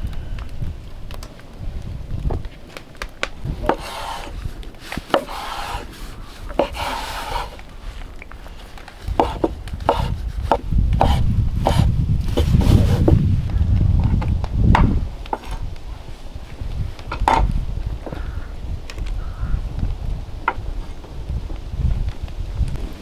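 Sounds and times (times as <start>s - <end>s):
knife scraping board: 3.5s - 13.2s
knife chopping on wooden board: 3.6s - 7.6s, 9.0s - 13.2s.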